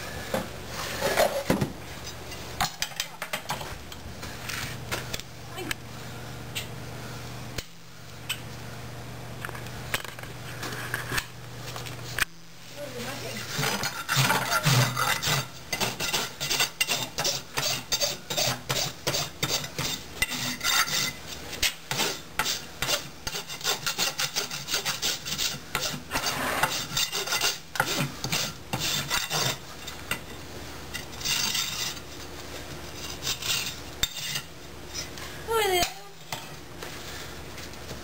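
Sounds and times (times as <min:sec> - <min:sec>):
hoof rasp filing: 0:13.8 - 0:21.2, 0:21.9 - 0:29.6, 0:33.0 - 0:34.4.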